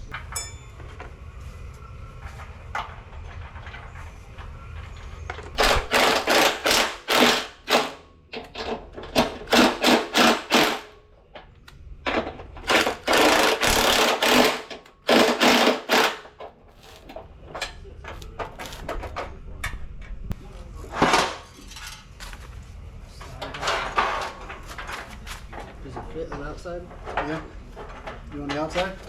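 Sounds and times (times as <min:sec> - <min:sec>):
rapid mechanical rattle: 0:05.5 - 0:10.9, 0:12.6 - 0:16.4.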